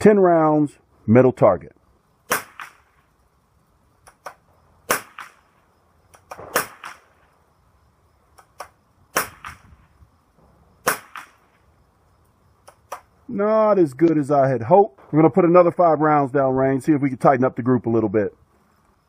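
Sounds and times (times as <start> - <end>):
rifle shots: 2.3 - 3.0, 4.2 - 5.5, 6.2 - 7.3, 9.1 - 9.7, 10.4 - 11.6.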